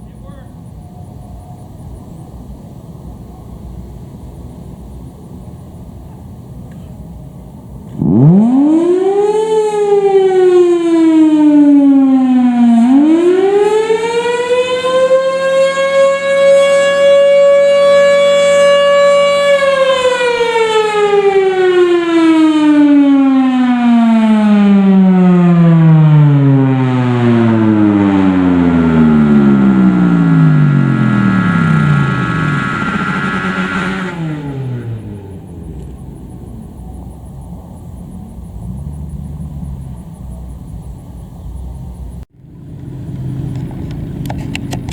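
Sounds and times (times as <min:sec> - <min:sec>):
storm siren wailing: 0:00.0 - 0:04.1, 0:08.0 - 0:38.8.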